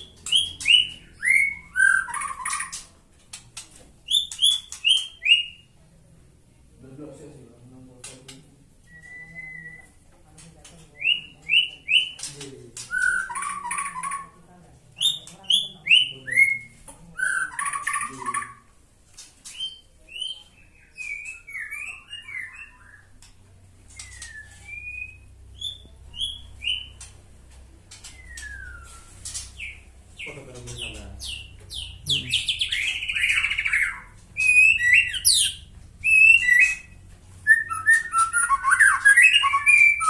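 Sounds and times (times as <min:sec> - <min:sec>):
bird singing whistled notes: 0:00.0 - 0:02.8, 0:08.8 - 0:10.0, 0:12.9 - 0:14.2, 0:19.5 - 0:23.1, 0:24.0 - 0:27.0, 0:28.0 - 0:29.8, 0:31.2 - 0:40.0.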